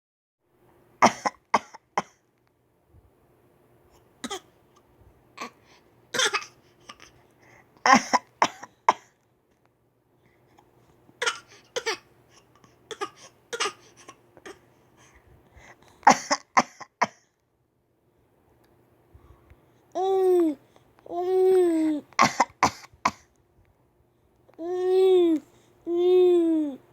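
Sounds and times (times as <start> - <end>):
child fake coughing: 1.0 - 2.2, 4.2 - 4.5, 6.2 - 7.2, 7.8 - 9.1, 11.2 - 12.1, 12.9 - 14.6, 16.1 - 17.2, 22.2 - 23.3.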